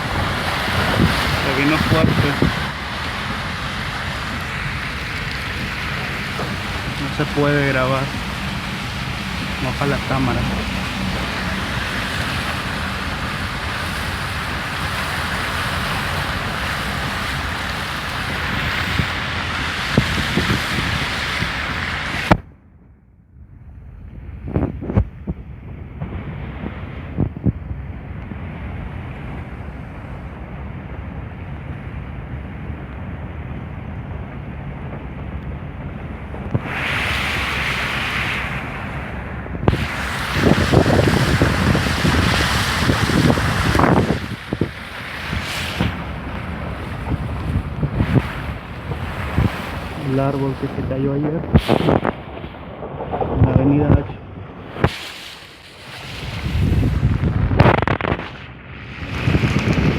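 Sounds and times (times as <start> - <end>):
heavy rain hissing: 0.0 - 22.4, 36.1 - 59.9
low rumble: 0.0 - 59.9
wind on microphone: 0.0 - 59.9
bright hiss: 54.8 - 56.4.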